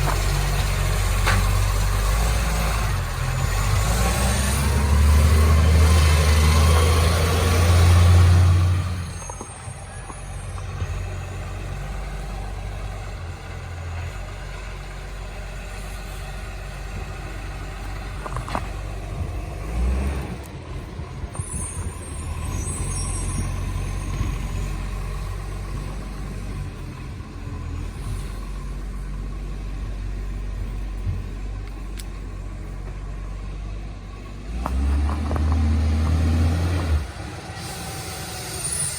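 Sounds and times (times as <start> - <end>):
diesel truck engine rumbling: 0.0 - 38.9
air hissing: 36.8 - 38.9.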